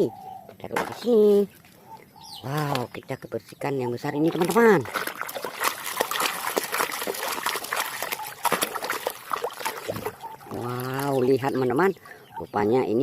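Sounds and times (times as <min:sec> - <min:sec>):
water trickling and splashing: 0:02.5 - 0:13.0
small splashes and drips: 0:03.6 - 0:11.6.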